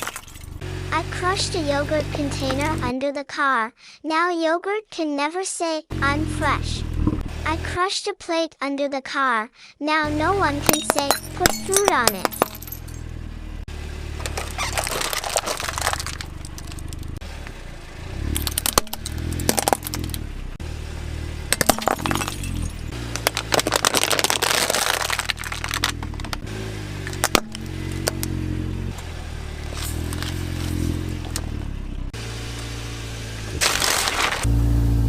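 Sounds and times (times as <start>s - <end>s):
objects crunching under car tyre: 0.0s - 0.6s, 14.1s - 17.2s, 18.2s - 20.3s, 21.5s - 31.8s, 33.6s - 34.6s.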